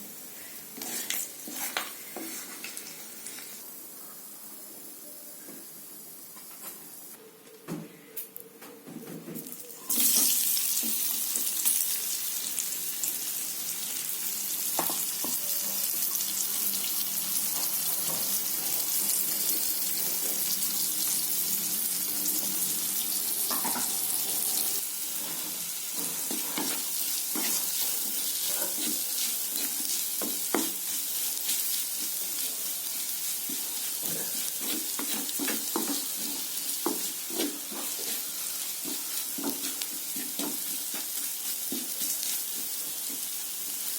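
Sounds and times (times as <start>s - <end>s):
prawns sizzling in hot oil: 9.7s - 43.9s.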